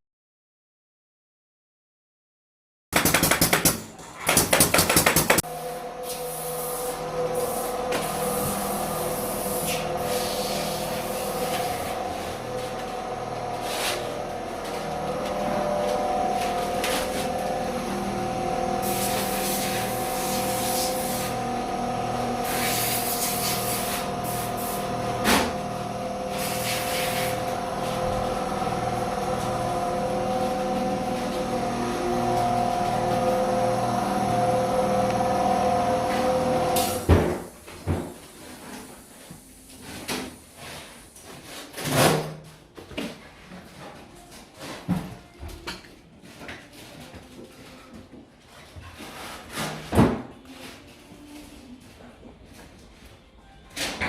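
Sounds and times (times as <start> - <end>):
machine hum with pulsing beat: 4.9 - 37.5.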